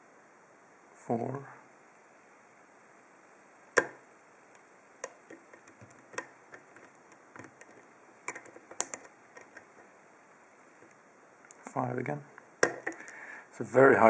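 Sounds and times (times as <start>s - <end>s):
lock pick clicking in padlock: 5.0s - 9.8s, 12.6s - 13.2s.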